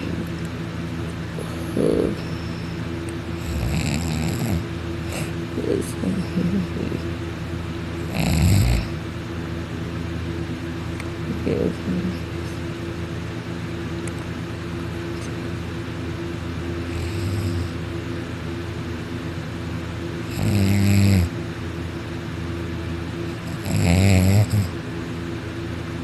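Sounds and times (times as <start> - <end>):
steady low hum: 0.0 - 26.0
person snoring heavily: 3.4 - 6.9, 8.0 - 9.0, 16.8 - 17.8, 20.3 - 21.3, 23.4 - 24.8.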